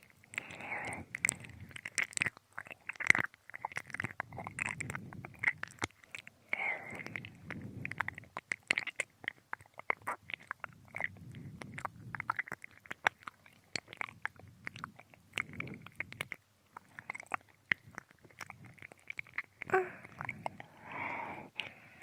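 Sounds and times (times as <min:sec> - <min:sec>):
tongue clicks and smacks: 0:00.0 - 0:21.8
soft breathing: 0:00.2 - 0:01.9, 0:06.0 - 0:08.1, 0:19.6 - 0:22.0.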